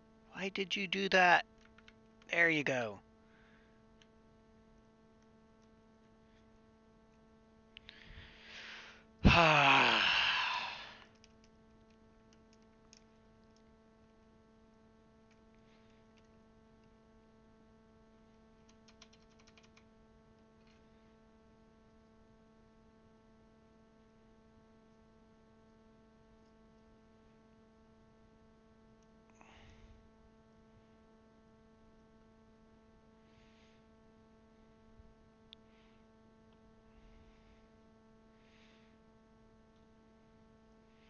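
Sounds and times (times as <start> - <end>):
electrical hum: 0.0 - 41.0
faint plastic clicks: 1.5 - 2.3, 11.0 - 17.0
man sighing loudly: 9.2 - 11.0.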